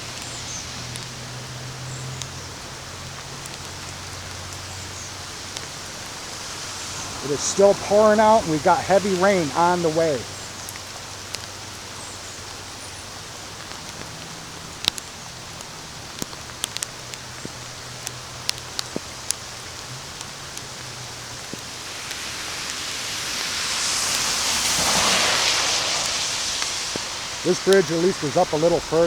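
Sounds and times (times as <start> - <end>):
heavy rain falling: 0.0 - 29.0
raindrops tapping sharply: 0.0 - 29.0
loud rushing noise: 6.1 - 10.5, 21.8 - 29.0.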